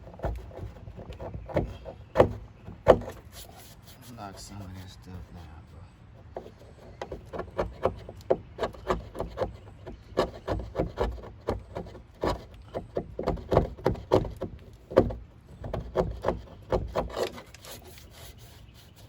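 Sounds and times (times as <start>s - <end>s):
sanding body filler by hand: 6.4s - 19.0s.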